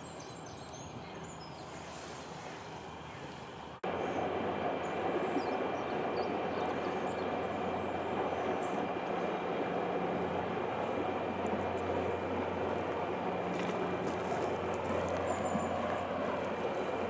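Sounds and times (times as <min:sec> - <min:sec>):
small birds chirping: 0:00.0 - 0:03.8, 0:04.8 - 0:09.4
steady rushing noise: 0:01.9 - 0:17.0.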